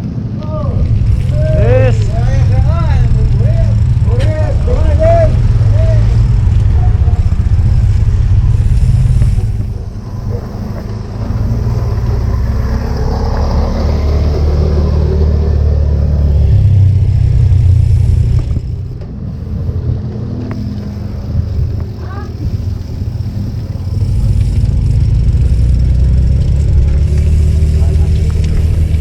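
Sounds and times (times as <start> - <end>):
bicycle road noise: 0.0 - 29.0
motor traffic passing: 0.0 - 29.0
wind buffeting microphone: 0.6 - 13.6.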